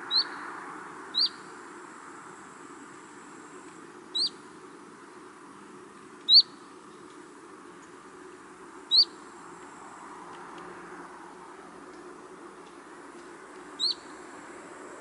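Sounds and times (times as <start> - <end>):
bird chirps: 0.0 - 0.4, 1.1 - 1.5, 4.1 - 4.4, 6.2 - 7.1, 8.9 - 9.3, 13.8 - 14.2
steady outdoor hush: 0.0 - 15.0.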